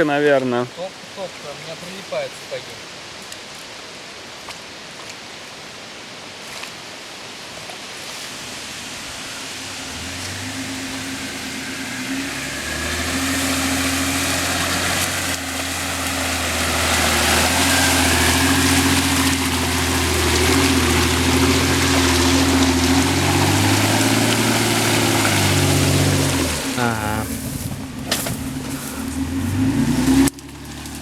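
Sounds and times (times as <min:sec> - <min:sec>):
steady hiss: 0:00.1 - 0:22.6
vehicle engine running at low revs: 0:08.3 - 0:31.0.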